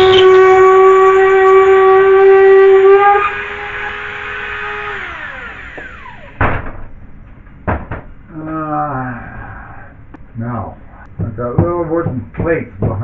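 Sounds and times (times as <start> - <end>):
high-speed power tool spinning: 0.0 - 6.4
sharp knocks: 5.8 - 8.2, 11.1 - 13.0.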